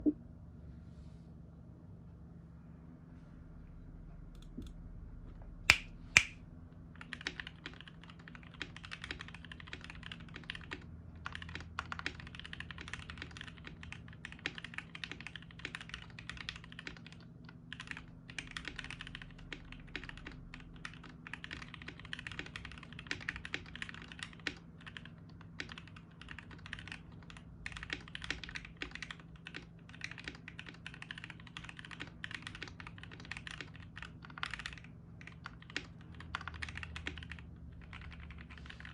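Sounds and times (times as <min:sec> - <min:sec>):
sharp clicks: 0:05.7 - 0:06.4
mechanical keyboard typing: 0:07.0 - 0:38.9.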